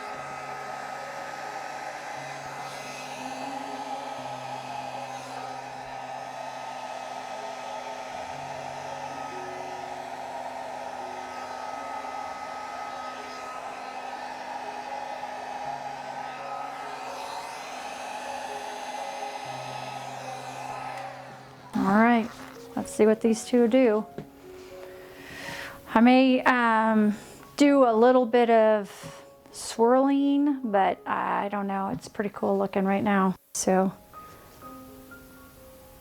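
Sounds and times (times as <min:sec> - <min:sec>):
hair dryer running: 0:00.0 - 0:27.6.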